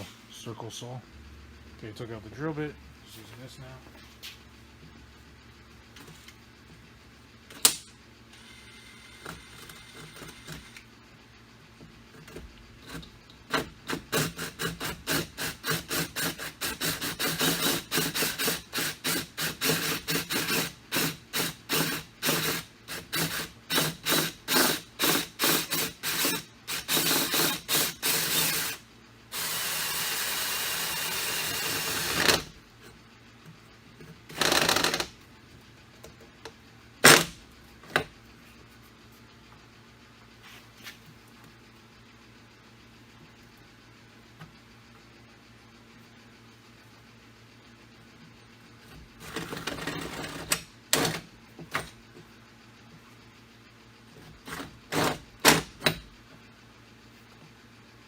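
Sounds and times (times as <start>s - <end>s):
power drill with hole saw: 14.2s - 32.5s.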